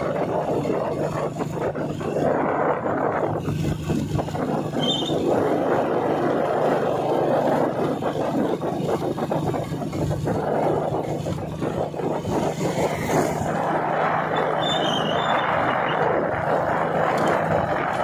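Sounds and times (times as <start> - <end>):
street traffic rumble: 0.0 - 18.0.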